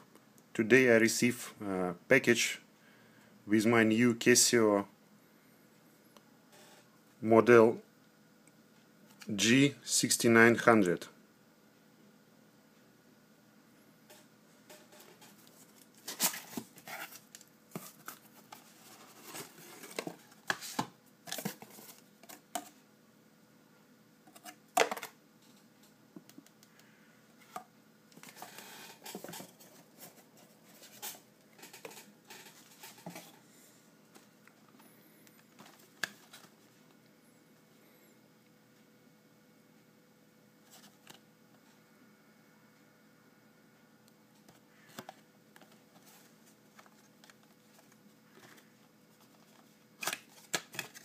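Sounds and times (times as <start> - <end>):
packaging rustling and crackling: 14.9 - 22.4.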